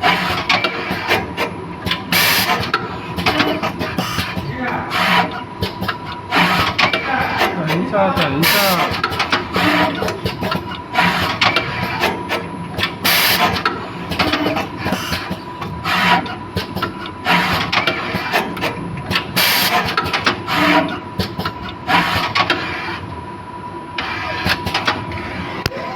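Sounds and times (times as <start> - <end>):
soldering machine hissing bursts: 6.3 - 9.9.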